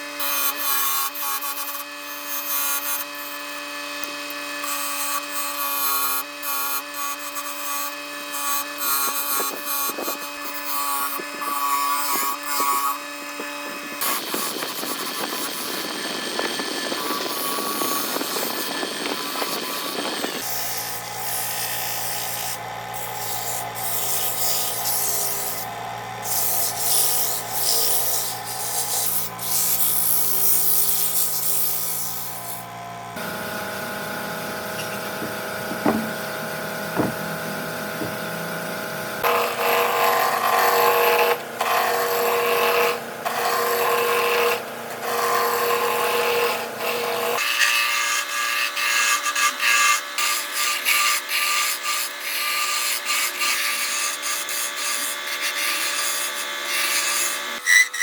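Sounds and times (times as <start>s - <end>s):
rubbing and rasping against wood: 4.6s - 32.8s, 34.4s - 38.4s, 39.2s - 58.0s
steady machine hum: 20.0s - 47.4s.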